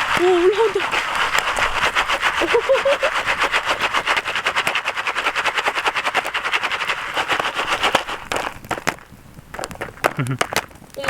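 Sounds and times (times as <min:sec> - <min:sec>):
sizzling hiss: 0:00.0 - 0:04.2, 0:05.0 - 0:11.0
popcorn popping: 0:00.0 - 0:11.0.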